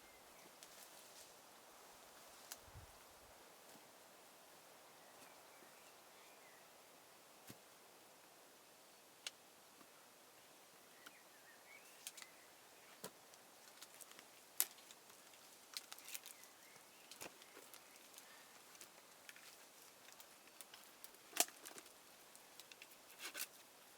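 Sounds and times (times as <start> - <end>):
faint bird chirps: 0.0 - 0.6, 4.8 - 7.1, 10.6 - 13.0, 15.9 - 18.6
twigs snapping: 13.0 - 21.9.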